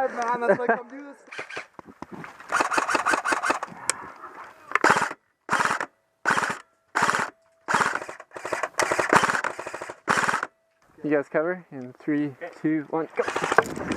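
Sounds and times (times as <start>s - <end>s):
airsoft guns firing: 2.5s - 3.7s, 4.7s - 10.5s, 13.2s - 13.7s.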